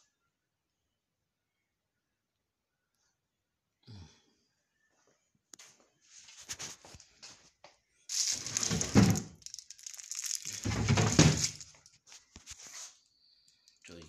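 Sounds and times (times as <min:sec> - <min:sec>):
rustling and crumpling: 0:08.1 - 0:13.0.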